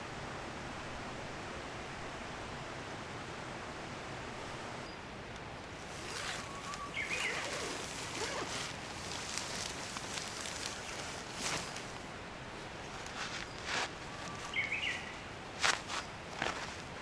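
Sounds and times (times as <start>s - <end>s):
steady hiss: 0.0s - 17.0s
faint crackles and clicks: 5.3s - 12.1s.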